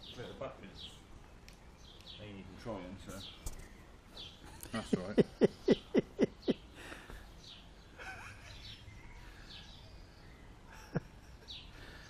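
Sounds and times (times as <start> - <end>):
low steady background: 0.0 - 12.0
faint bird chirps: 5.6 - 12.0.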